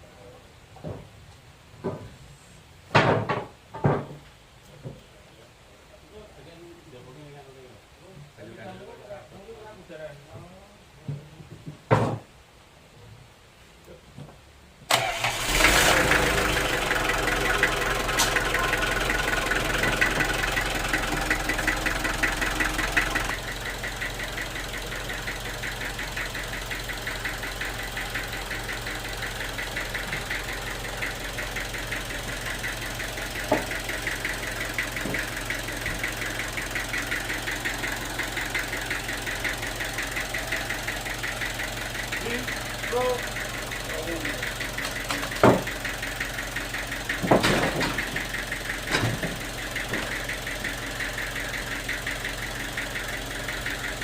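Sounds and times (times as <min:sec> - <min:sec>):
engine running with knocking beat: 0:15.6 - 0:54.0.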